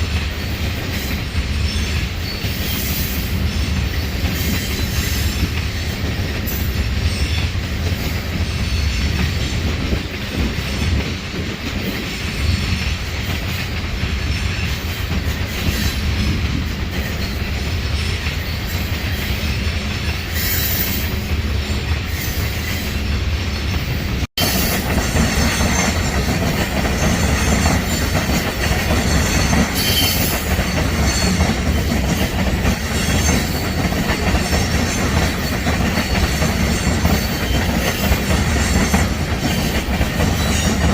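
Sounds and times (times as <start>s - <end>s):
freight train wheels rumbling on rail: 0.0s - 40.9s.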